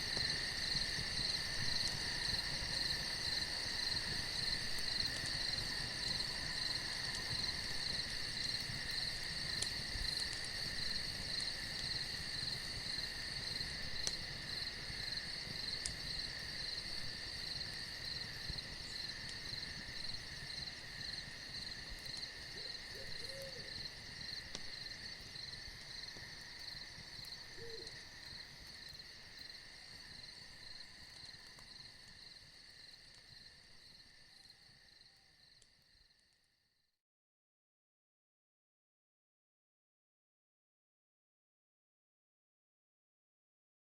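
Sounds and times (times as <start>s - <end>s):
crickets trilling: 0.0s - 36.3s
owl hooting faintly: 22.6s - 23.8s, 27.4s - 28.1s.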